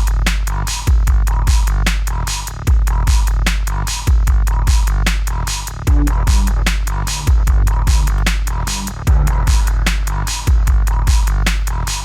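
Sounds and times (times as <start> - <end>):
electronic dance music: 5.9 - 8.1.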